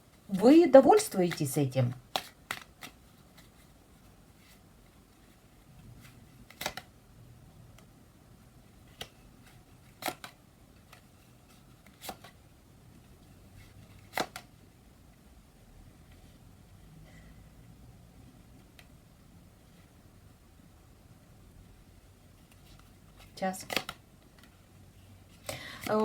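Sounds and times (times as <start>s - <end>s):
cards snapping onto a table: 6.5s - 6.9s, 14.1s - 14.5s, 23.6s - 24.0s.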